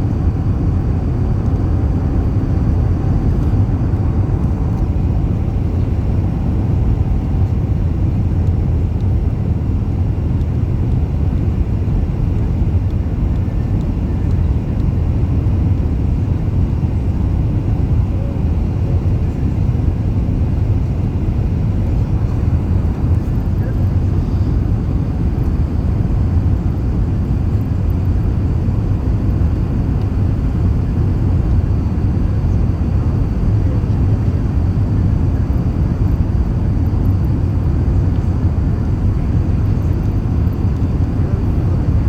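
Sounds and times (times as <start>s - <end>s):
airliner low rumble: 0.0s - 42.0s.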